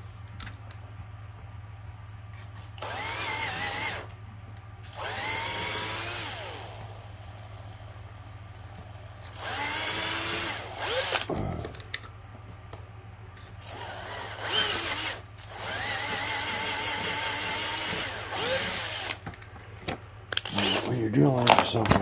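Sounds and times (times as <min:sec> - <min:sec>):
power drill whining: 0:02.4 - 0:04.1, 0:04.8 - 0:11.3, 0:13.6 - 0:19.2, 0:20.4 - 0:21.0.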